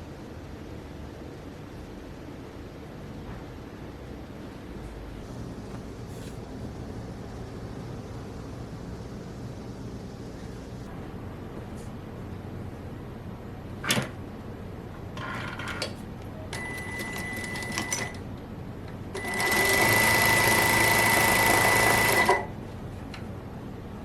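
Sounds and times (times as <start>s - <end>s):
sewing machine stitching: 19.2s - 22.5s.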